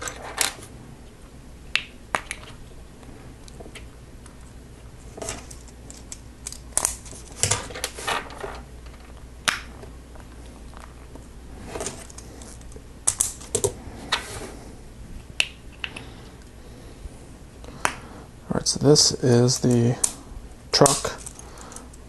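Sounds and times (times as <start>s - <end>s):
plastic parts rustling scrapes: 6.9s - 9.1s, 11.6s - 12.8s.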